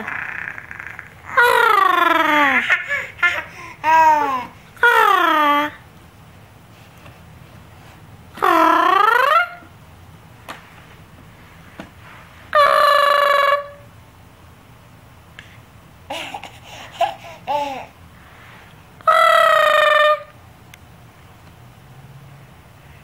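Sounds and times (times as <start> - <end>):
person imitating wookiee howl: 8.4 - 9.7, 12.6 - 13.8, 19.1 - 20.3.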